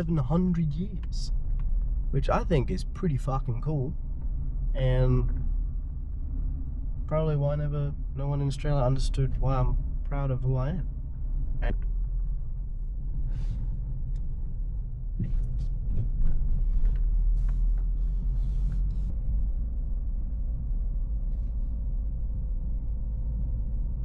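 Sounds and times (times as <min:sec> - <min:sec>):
car road and engine rumble: 0:00.0 - 0:24.0
light knocks and rattles: 0:15.2 - 0:19.1.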